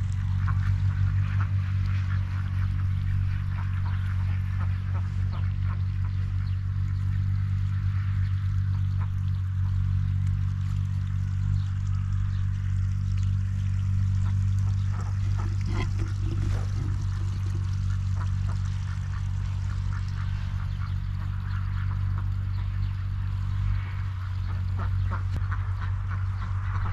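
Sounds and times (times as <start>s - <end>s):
steady low hum: 0.0s - 26.9s
ducks quacking: 0.2s - 10.2s, 11.9s - 26.9s
running water: 6.8s - 25.4s.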